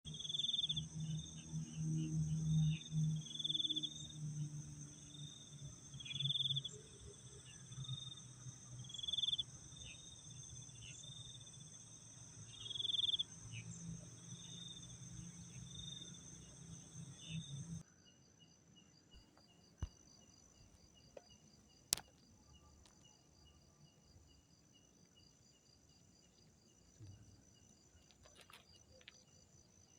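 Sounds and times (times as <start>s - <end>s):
crickets trilling: 0.1s - 17.8s, 19.2s - 29.9s
louder insect call: 0.1s - 29.9s
sharp clicks: 21.9s - 22.2s.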